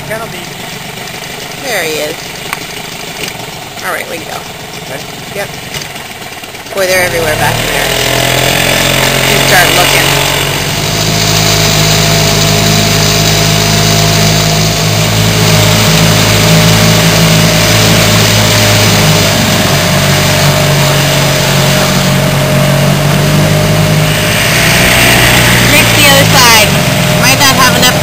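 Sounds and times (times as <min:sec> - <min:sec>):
outboard motor running: 0:00.0 - 0:28.0.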